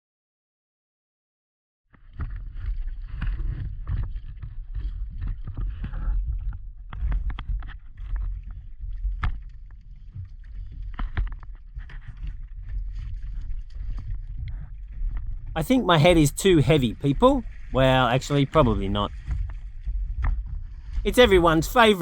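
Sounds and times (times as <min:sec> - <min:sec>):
wind rumble on microphone: 0:02.0 - 0:15.6, 0:19.0 - 0:21.1.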